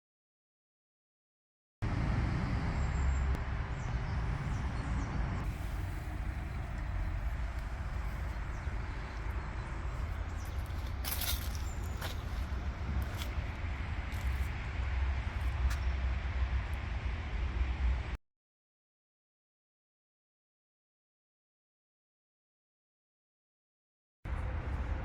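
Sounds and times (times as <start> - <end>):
low rumble of vehicle noise: 1.8 - 18.2, 24.3 - 25.0.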